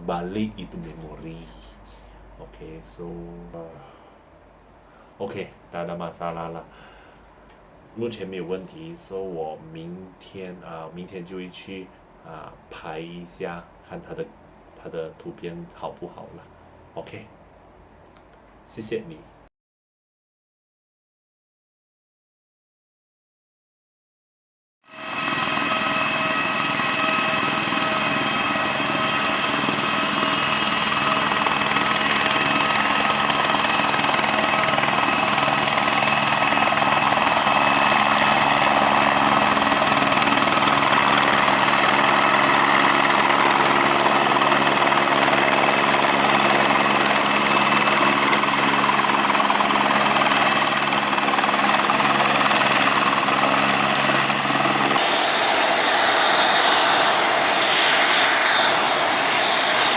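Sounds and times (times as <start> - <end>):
aircraft engines running: 24.9 - 59.9
high engine whine: 24.9 - 59.9.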